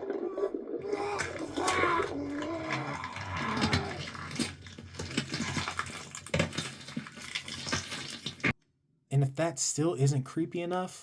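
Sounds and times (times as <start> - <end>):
pained scream-like voice: 0.0 - 4.5
cracking and snapping clicks: 1.0 - 8.6.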